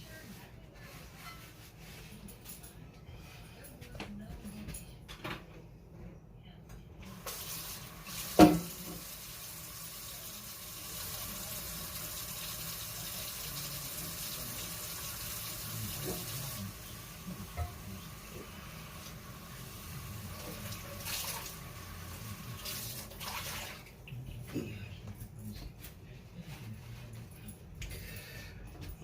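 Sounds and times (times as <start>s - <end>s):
tap water running into sink: 7.1s - 18.2s, 18.8s - 23.9s.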